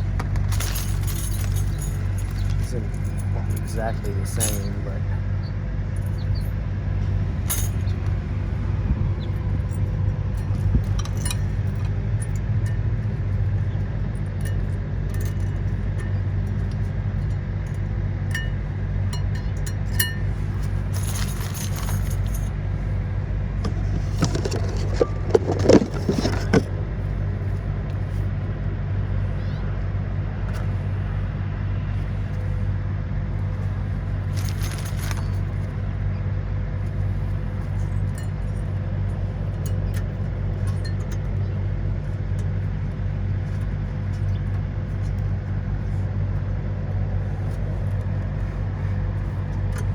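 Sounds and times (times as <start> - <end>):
metal clips clicking and clinking: 0.0 - 4.8, 7.5 - 7.9, 10.4 - 12.8, 14.4 - 18.5, 19.2 - 22.5, 34.3 - 35.5
steady low hum: 0.0 - 49.9.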